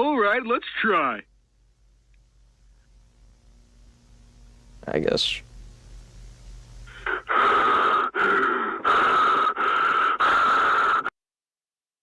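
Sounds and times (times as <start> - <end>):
harsh rasping breathing: 6.9 - 11.1.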